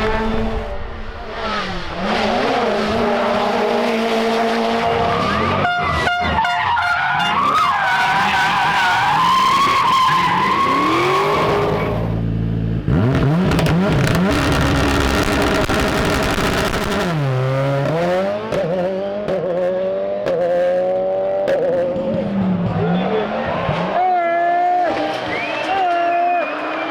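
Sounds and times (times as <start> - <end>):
tyres skidding: 0.0 - 12.2
rally car engines revving: 0.0 - 26.9
exhaust pops and cracks: 13.2 - 17.2, 17.8 - 19.5.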